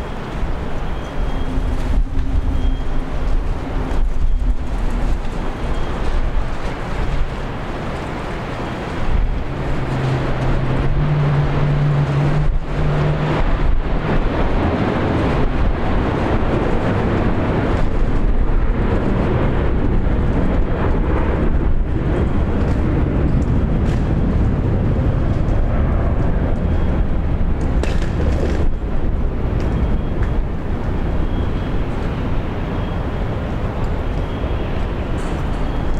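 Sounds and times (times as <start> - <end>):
low engine hum: 0.0 - 35.9
vehicle rumble and road noise: 0.0 - 35.9.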